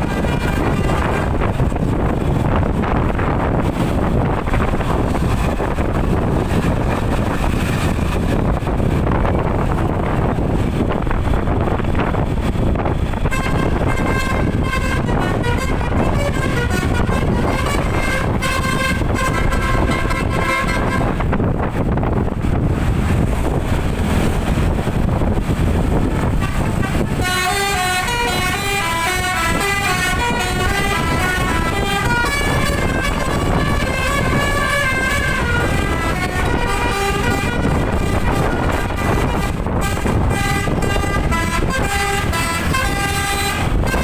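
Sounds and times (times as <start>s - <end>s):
bus musical horn playing a tune: 0.0s - 6.6s, 13.0s - 21.8s, 25.4s - 44.0s
wind and road noise rumble: 0.0s - 44.0s.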